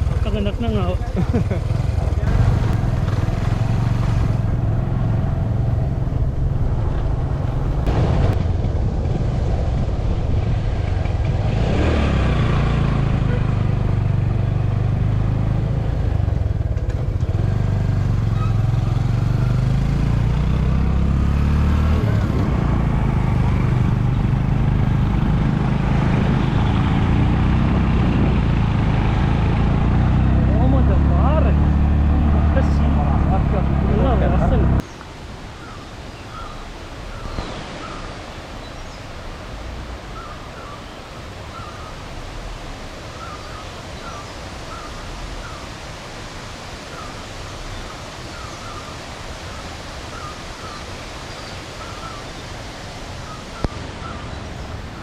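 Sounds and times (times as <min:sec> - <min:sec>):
steady rushing noise: 0:00.0 - 0:17.2
vehicle engine drone: 0:00.0 - 0:34.9.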